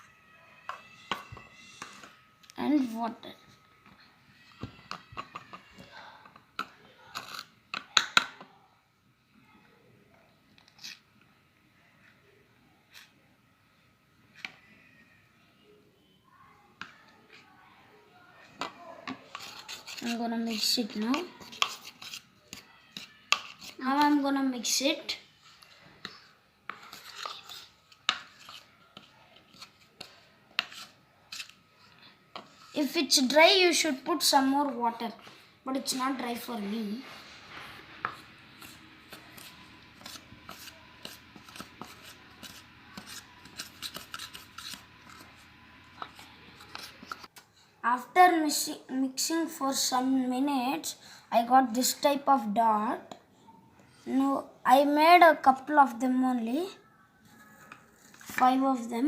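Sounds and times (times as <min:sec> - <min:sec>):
spoon scraping dough: 0:00.6 - 0:02.3, 0:03.8 - 0:08.4, 0:10.6 - 0:11.1, 0:18.5 - 0:47.5, 0:57.2 - 0:58.9.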